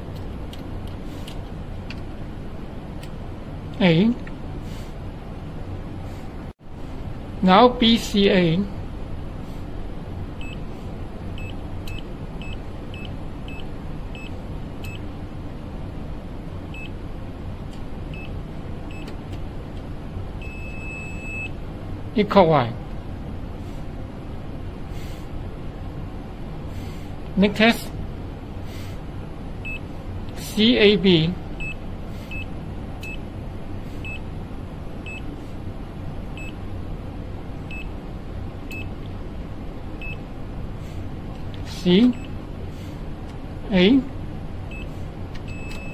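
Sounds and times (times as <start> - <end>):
steady low hum: 0.0 - 45.9
multimeter buzzer beeps: 20.4 - 21.6, 45.5 - 45.9.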